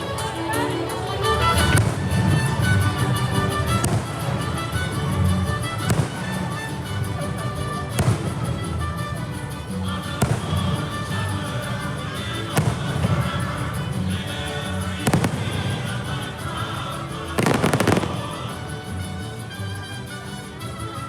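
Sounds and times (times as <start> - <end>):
music with held notes: 0.0 - 21.0
fireworks bangs: 1.8 - 5.1, 5.8 - 7.2, 7.9 - 8.7, 10.2 - 11.3, 12.5 - 13.8, 15.0 - 16.2, 17.4 - 18.6.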